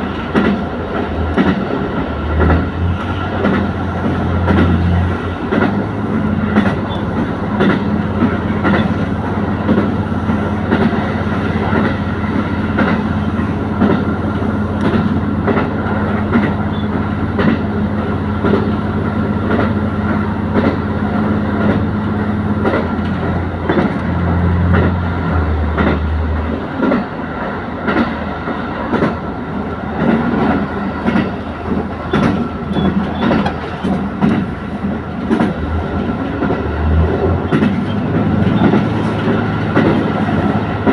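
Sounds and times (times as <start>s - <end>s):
wheels clicking over rail joints: 0.0s - 17.8s, 30.0s - 40.9s
diesel railcar engine drone: 0.0s - 40.9s.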